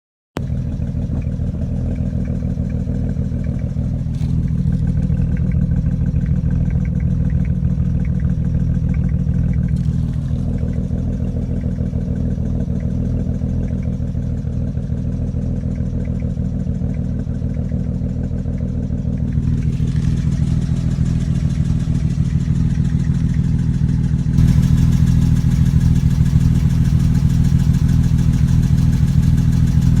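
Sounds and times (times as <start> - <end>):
car engine running with misfire: 0.4 - 30.0.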